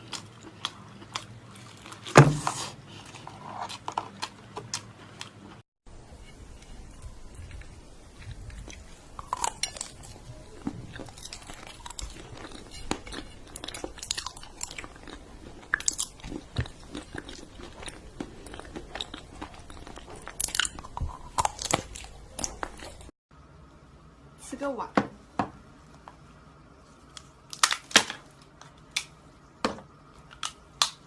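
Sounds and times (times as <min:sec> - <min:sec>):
crunchy food being chewed: 0:00.0 - 0:23.1.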